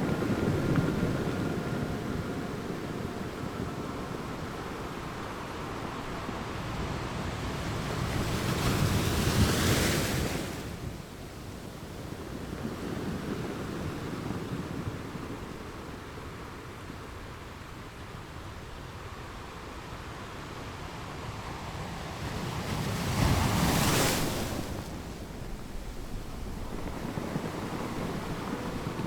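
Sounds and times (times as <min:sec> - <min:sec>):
ocean waves washing: 0:00.0 - 0:11.3, 0:21.5 - 0:29.0.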